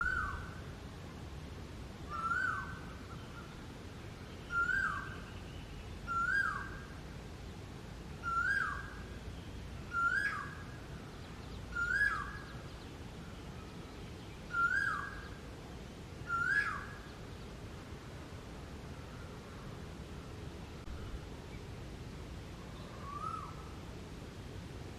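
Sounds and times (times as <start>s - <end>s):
bird calling rising and falling: 0.0s - 0.5s, 2.1s - 2.8s, 4.5s - 5.2s, 8.2s - 8.9s, 9.9s - 10.6s, 11.7s - 12.5s, 14.5s - 15.2s, 16.3s - 17.0s, 22.8s - 23.7s.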